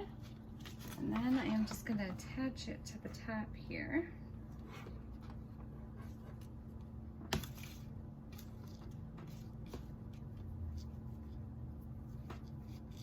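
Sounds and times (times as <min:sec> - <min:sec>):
faint rustling and handling: 0:00.0 - 0:03.3
low steady hum: 0:00.0 - 0:13.0.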